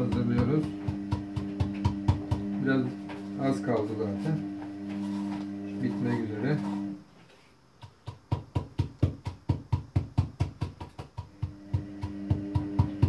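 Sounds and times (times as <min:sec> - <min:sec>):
rhythmic knocking in a bowl: 0:00.0 - 0:03.4, 0:07.8 - 0:13.0
steady low hum: 0:00.0 - 0:07.8.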